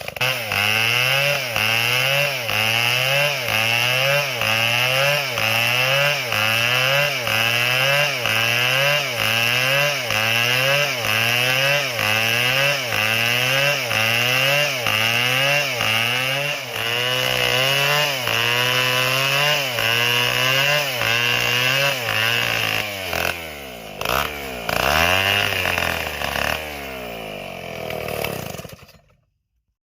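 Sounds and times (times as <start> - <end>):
chainsaw cutting wood: 0.0 - 29.4.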